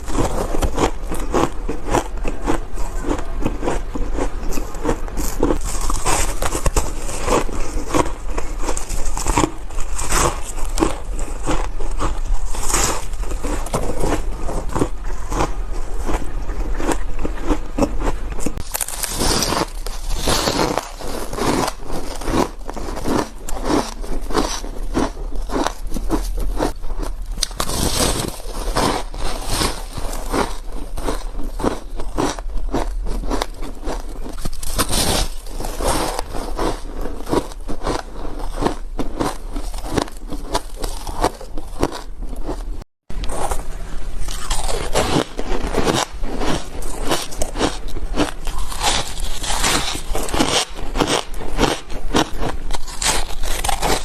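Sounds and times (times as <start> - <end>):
ice being chewed: 0.0 - 54.0.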